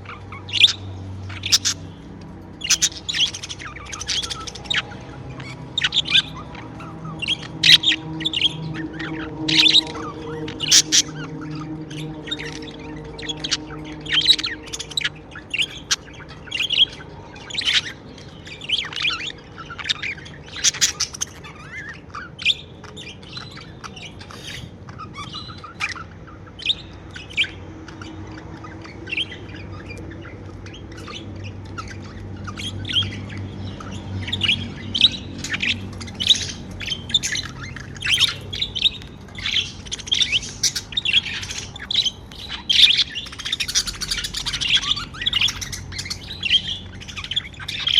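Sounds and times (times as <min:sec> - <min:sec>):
budgerigars chirping: 0:00.0 - 0:47.9.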